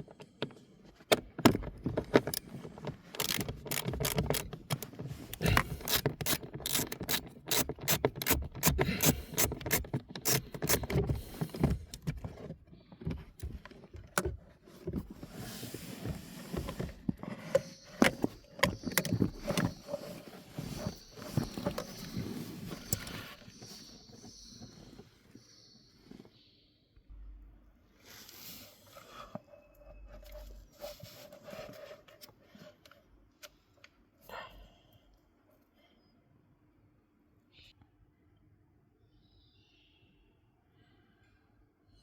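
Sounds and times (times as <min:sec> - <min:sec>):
tools clicking and knocking: 0:00.0 - 0:15.0, 0:18.0 - 0:19.8.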